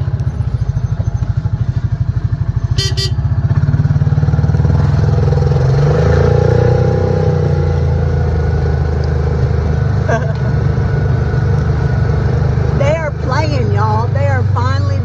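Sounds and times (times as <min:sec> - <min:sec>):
vehicle engine running: 0:00.0 - 0:06.3, 0:07.4 - 0:15.0
short high beeps: 0:02.8 - 0:03.2.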